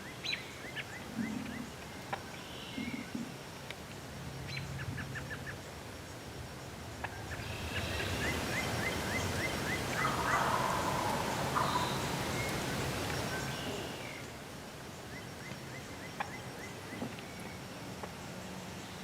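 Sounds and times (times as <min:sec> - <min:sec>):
turkey gobble: 0:07.0 - 0:14.0
turkey yelping: 0:09.8 - 0:12.7.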